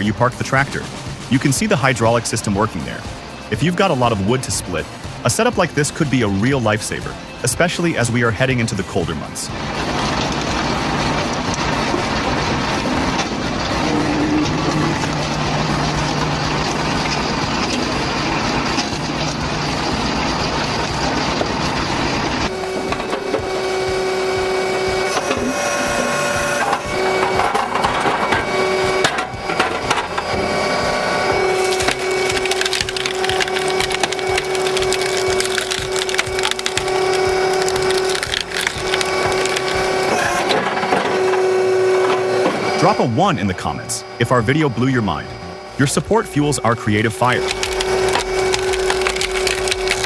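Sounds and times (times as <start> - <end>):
log splitting machinery running: 0.0 - 50.0
wood cracking and splintering: 31.3 - 40.8, 47.2 - 50.0.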